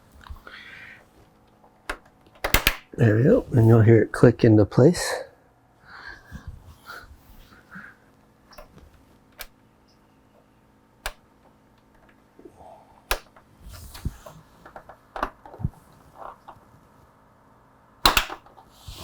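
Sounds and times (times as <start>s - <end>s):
plastic clips snapping into place: 1.9s - 2.9s, 11.0s - 11.2s, 13.1s - 13.4s, 18.0s - 18.6s.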